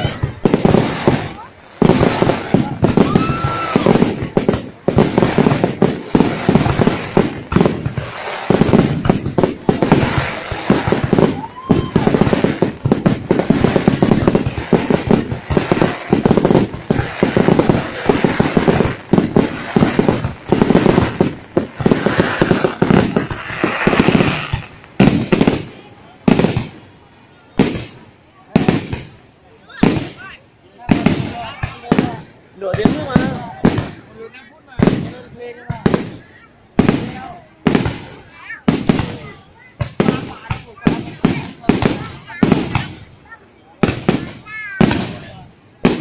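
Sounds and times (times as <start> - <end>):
fireworks bangs and crackles: 0.0 - 46.0
firework whistle: 2.2 - 4.2, 10.6 - 12.6.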